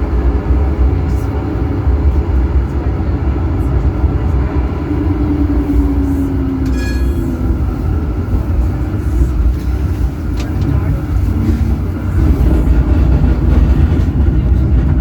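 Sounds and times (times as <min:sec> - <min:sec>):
tram motor tone: 0:00.0 - 0:15.0
tram rumbling: 0:00.0 - 0:15.0
short high ringing tone: 0:06.6 - 0:07.5.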